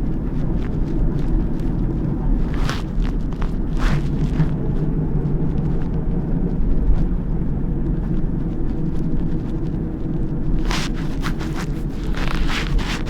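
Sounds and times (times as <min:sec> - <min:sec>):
bus engine rumbling: 0:00.0 - 0:13.0.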